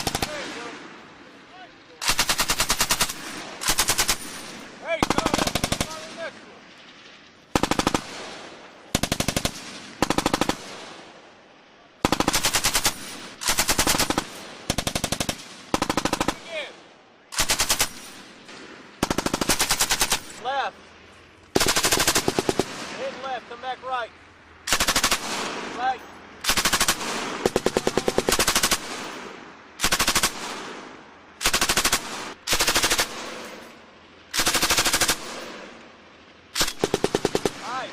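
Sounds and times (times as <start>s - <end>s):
machine gun firing bursts: 0.0s - 0.7s, 2.0s - 6.3s, 7.5s - 11.0s, 12.0s - 16.7s, 17.3s - 18.2s, 19.0s - 20.4s, 21.5s - 23.2s, 24.7s - 33.6s, 34.3s - 35.8s, 36.5s - 37.9s
gunfire echo rolling away: 0.0s - 23.7s, 24.6s - 37.9s.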